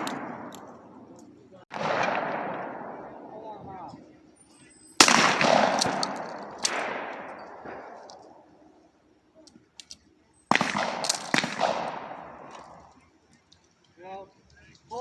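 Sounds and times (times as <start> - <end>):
shotgun blasts echoing: 0.0 - 1.0, 1.7 - 3.4, 5.0 - 8.4, 10.5 - 12.7.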